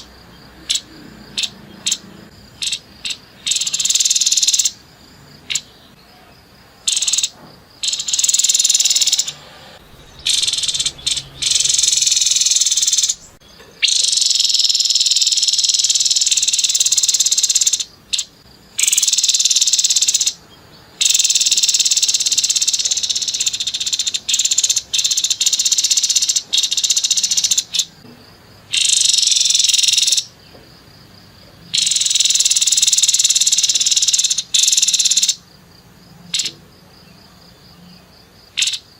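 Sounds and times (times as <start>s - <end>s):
bird rattling calls: 6.9s - 14.3s.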